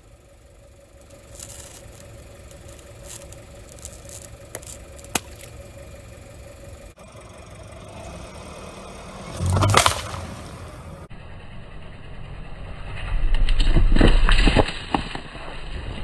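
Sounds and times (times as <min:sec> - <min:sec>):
tire crushing an object: 0:00.0 - 0:07.0, 0:08.0 - 0:11.1, 0:12.9 - 0:16.0
car engine running: 0:00.0 - 0:15.3
small crackles: 0:00.9 - 0:06.2.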